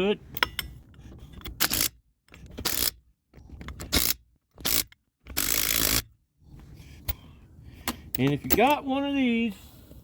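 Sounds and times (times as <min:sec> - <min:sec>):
lug nuts metallic scraping: 0:00.2 - 0:07.2.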